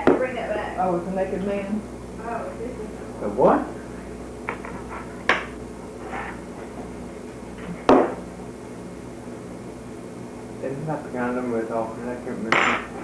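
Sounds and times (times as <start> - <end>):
sharp knocks on kitchen counter: 5.3 - 5.6, 7.9 - 8.2.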